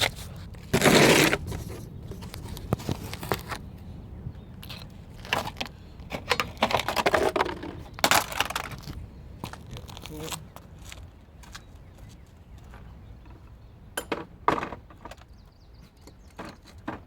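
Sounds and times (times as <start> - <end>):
rattling scrapes: 0.0 - 3.6, 4.7 - 9.0.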